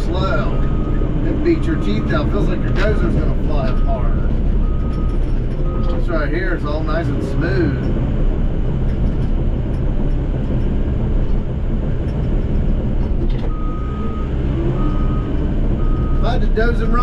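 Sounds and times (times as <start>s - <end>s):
bulldozer engine and tracks: 0.0s - 17.0s
backup alarm beeping: 13.5s - 16.3s.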